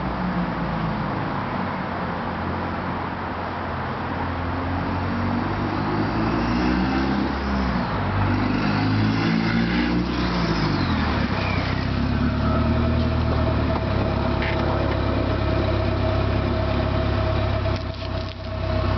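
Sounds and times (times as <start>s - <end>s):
car engine revving: 5.2s - 18.9s.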